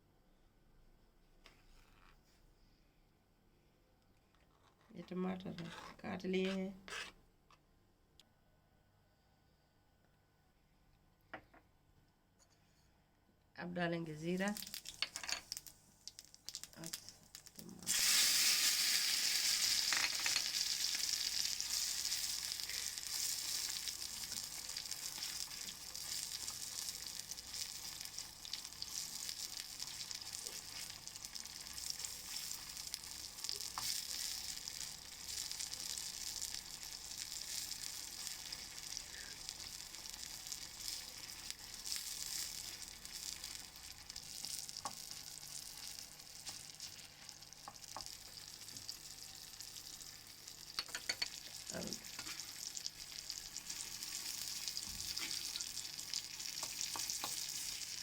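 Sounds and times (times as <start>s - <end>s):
seeds and tomatoes sizzling: 14.1s - 58.0s
stirring clicks: 50.8s - 51.4s.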